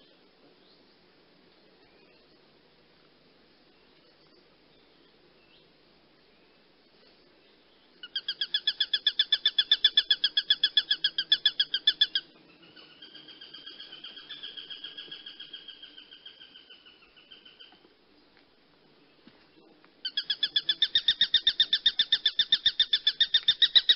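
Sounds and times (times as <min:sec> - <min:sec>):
hawk chattering call: 0:08.0 - 0:17.7, 0:20.0 - 0:23.9.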